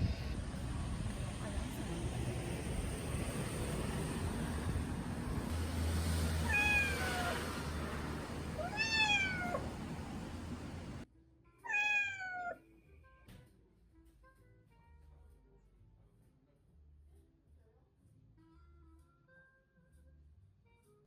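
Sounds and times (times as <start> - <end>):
cat meowing: 6.4 - 7.6, 8.4 - 11.0, 11.7 - 12.6.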